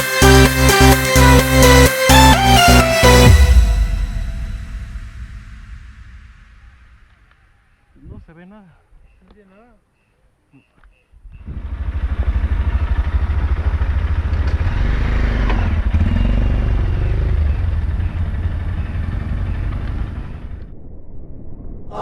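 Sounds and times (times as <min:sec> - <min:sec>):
motorcycle engine running: 0:11.2 - 0:20.6
road and wind noise: 0:11.2 - 0:20.8.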